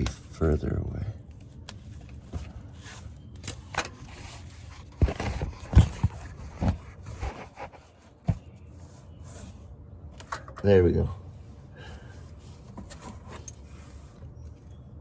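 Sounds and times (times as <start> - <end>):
knocks and clunks of tools: 10.2 - 10.7.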